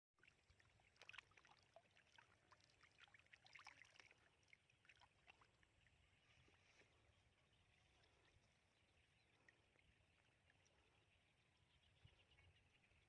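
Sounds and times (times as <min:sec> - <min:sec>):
splashing of shallow muddy water: 0:00.2 - 0:05.9
small wet crackles and plops: 0:00.2 - 0:07.0.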